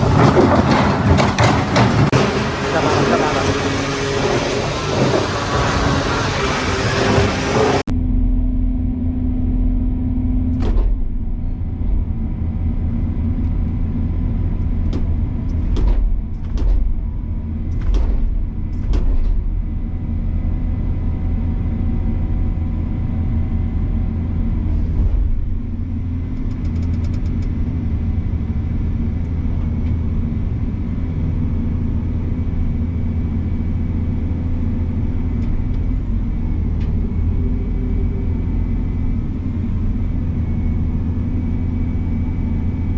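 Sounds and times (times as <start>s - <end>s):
metal knocks and clanks: 0.0s - 2.6s, 10.5s - 12.2s, 14.6s - 20.0s
excavator engine running: 0.0s - 42.9s.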